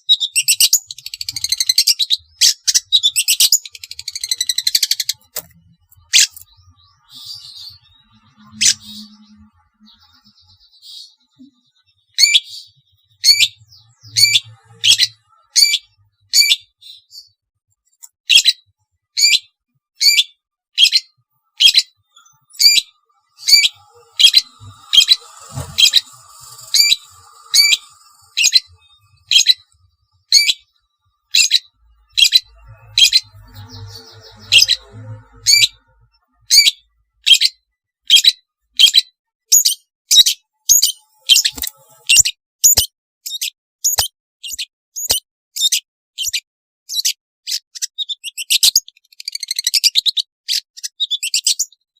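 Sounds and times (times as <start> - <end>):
faint soft bird twittering: 0.0 - 17.4, 19.2 - 51.7
shrike harsh calls: 22.6 - 30.7.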